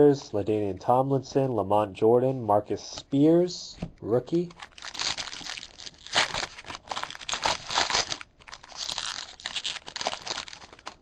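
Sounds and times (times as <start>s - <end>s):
foil wrapper tearing and crinkling: 4.6s - 11.0s.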